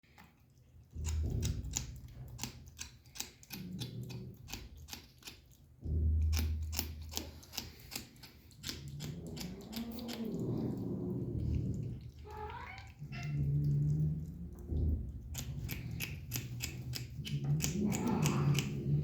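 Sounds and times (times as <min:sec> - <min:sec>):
kitten eating with clicking: 0:00.0 - 0:19.0
kitten low wavering sound: 0:08.7 - 0:19.0
low hum: 0:08.7 - 0:19.0.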